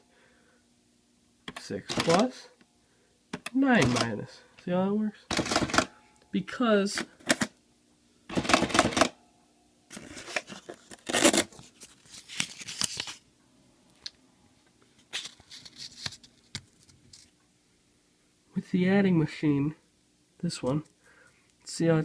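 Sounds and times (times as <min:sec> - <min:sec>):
paper tape tearing: 0:09.9 - 0:13.2.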